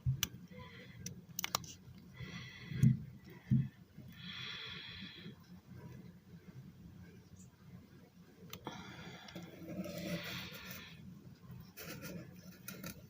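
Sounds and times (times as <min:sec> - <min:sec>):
plastic parts clicking: 0:01.0 - 0:01.8
person breathing close: 0:02.1 - 0:05.4, 0:08.6 - 0:11.1.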